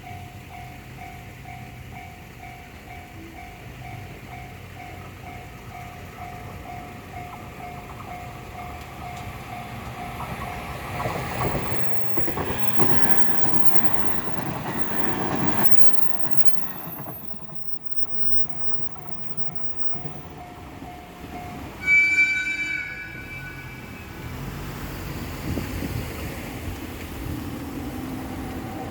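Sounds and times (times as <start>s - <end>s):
train rushing past: 0.4s - 28.9s
level-crossing bell ringing: 17.6s - 24.2s
train horn: 21.8s - 24.5s.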